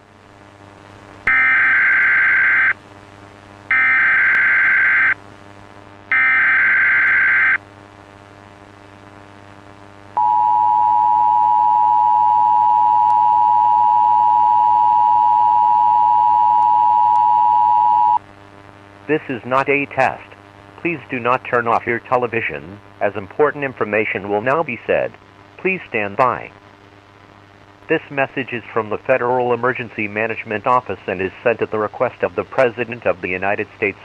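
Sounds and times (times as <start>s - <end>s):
steady two-tone alert signal: 1.3s - 2.7s, 3.7s - 5.2s, 6.1s - 7.6s, 10.2s - 18.2s.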